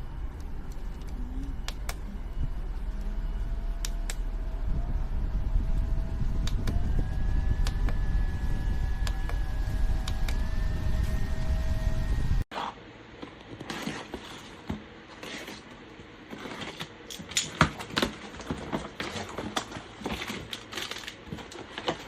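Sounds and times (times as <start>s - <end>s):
fan airflow rumble: 0.0s - 12.5s
faint motor whine: 0.0s - 16.9s.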